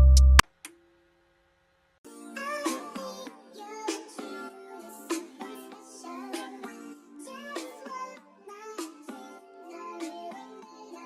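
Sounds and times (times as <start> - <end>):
song with vocals over beats: 2.1 - 11.0.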